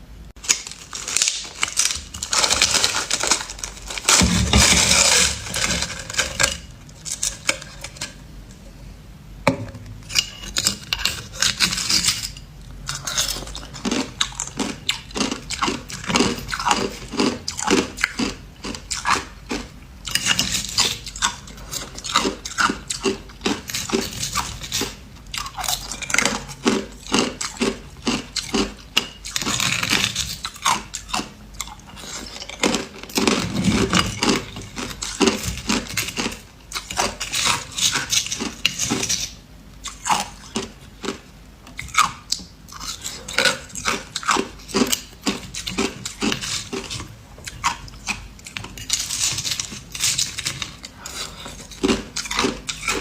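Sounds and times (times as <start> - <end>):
person crunching ice: 0.4 - 6.4.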